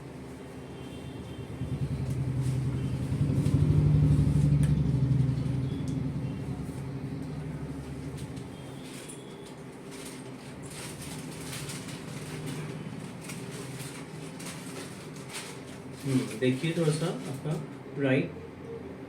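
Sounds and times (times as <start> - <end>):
vehicle engine passing by: 1.1 - 8.8.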